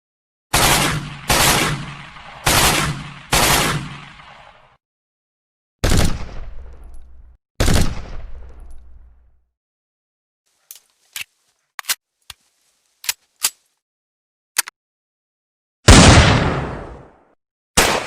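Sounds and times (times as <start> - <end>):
gunshots ringing out: 0.5 - 4.8, 5.8 - 6.9, 7.6 - 9.0, 15.9 - 17.2, 17.8 - 18.0.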